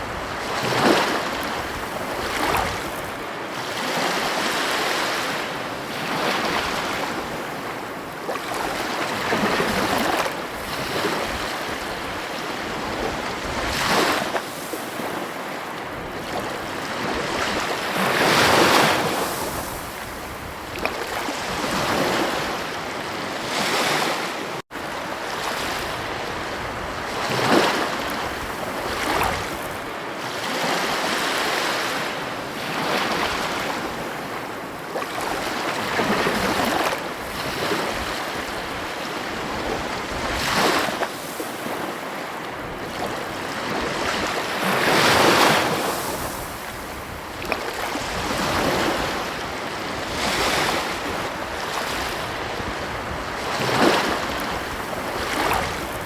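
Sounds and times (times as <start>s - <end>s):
ocean surf breaking: 0.0s - 56.0s.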